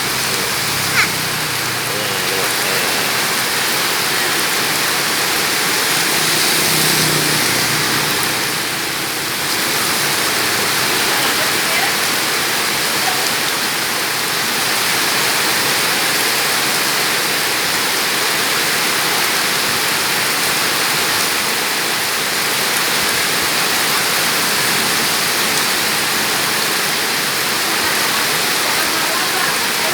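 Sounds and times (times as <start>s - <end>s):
small waterfall rushing: 0.0s - 29.9s.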